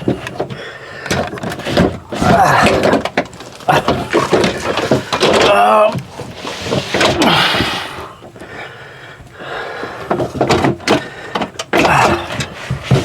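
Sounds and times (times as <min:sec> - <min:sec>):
tools knocking and rattling: 0:00.0 - 0:07.4, 0:10.0 - 0:13.0.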